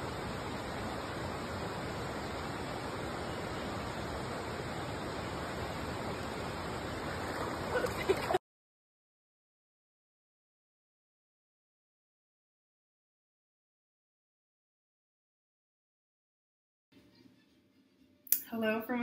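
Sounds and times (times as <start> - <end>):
water rushing: 0.0 - 8.4.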